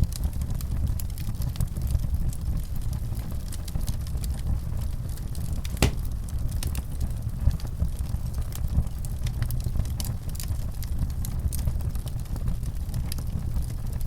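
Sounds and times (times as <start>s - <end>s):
fire popping: 5.6s - 6.3s
wood fire crackling: 5.6s - 6.6s.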